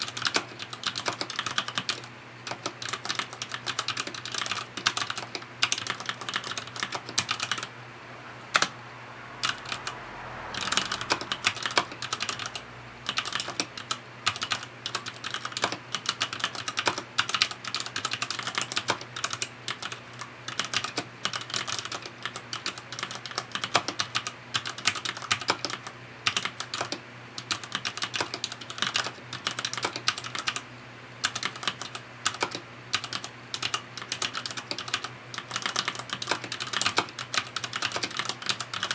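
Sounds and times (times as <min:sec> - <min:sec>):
mechanical keyboard typing: 0:00.0 - 0:07.7, 0:10.6 - 0:30.6, 0:31.2 - 0:38.9.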